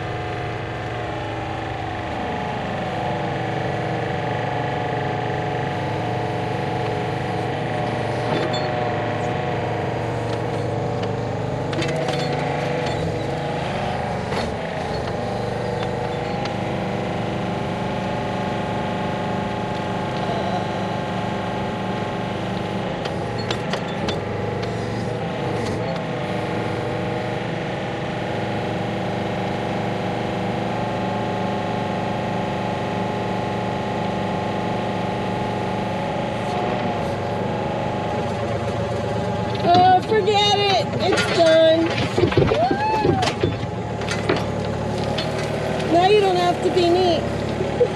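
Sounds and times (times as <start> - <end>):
engine running: 0.0 - 47.9
knocks and clatters: 10.2 - 13.4, 38.2 - 46.0.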